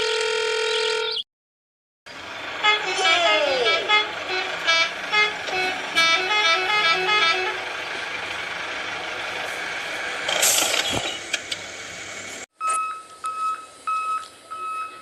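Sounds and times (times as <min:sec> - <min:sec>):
noisy rumble: 0:02.1 - 0:12.5
horn tooting a tune: 0:02.5 - 0:07.9.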